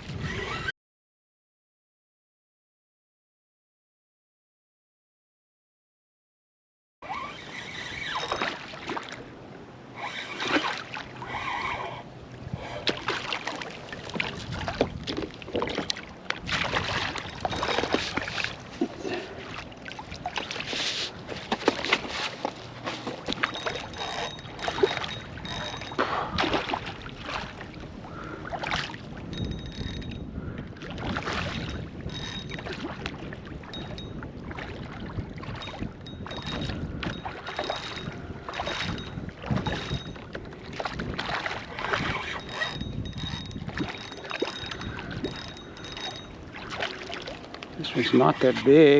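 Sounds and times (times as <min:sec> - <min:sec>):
wind on microphone: 0:00.0 - 0:00.7, 0:14.0 - 0:19.0, 0:23.4 - 0:46.9
water splashing around kayak: 0:07.1 - 0:48.9.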